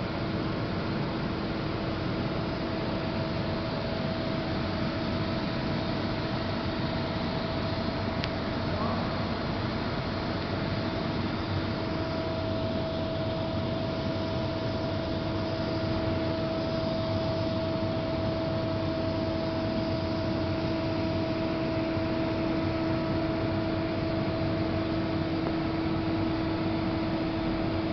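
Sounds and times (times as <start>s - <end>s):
lathe machine humming: 2.3s - 27.9s.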